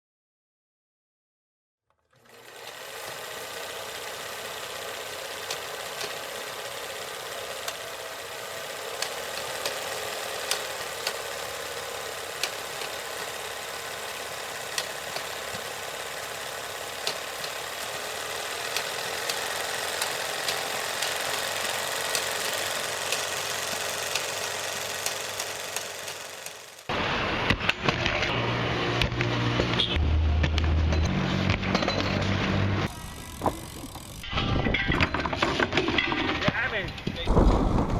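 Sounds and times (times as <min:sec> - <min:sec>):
rapid mechanical clatter: 0:02.1 - 0:27.0, 0:32.8 - 0:37.9.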